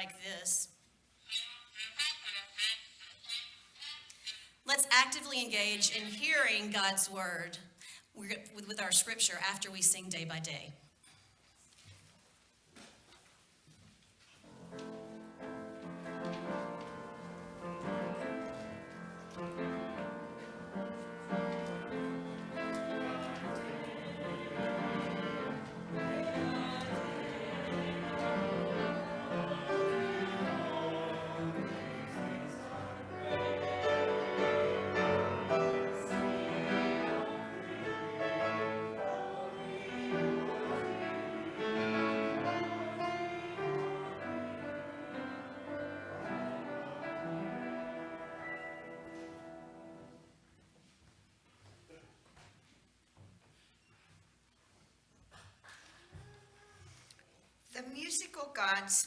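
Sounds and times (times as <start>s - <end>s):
piano accompaniment: 14.5s - 50.4s
person singing: 25.9s - 44.8s.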